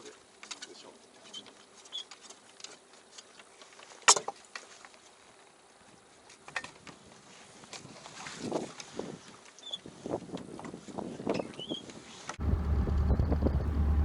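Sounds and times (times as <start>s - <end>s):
wind noise on microphone: 7.8s - 14.0s.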